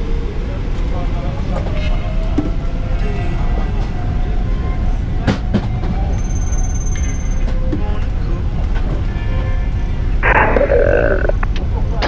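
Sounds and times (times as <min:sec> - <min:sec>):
jet engines rumbling: 0:10.0 - 0:12.0.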